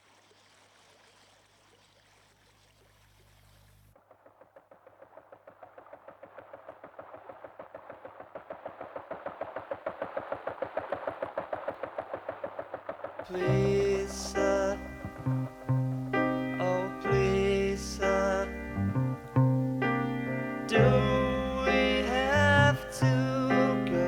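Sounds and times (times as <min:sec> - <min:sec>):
faint hiss like running water: 0:00.0 - 0:03.9, 0:13.3 - 0:20.7.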